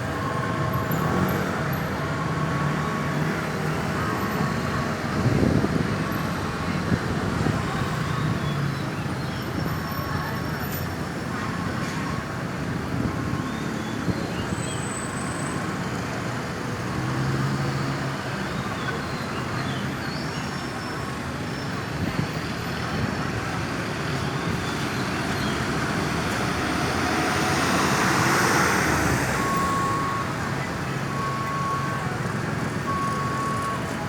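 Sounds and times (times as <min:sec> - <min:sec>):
road traffic: 0:00.0 - 0:34.0
vehicle approaching: 0:21.8 - 0:34.0.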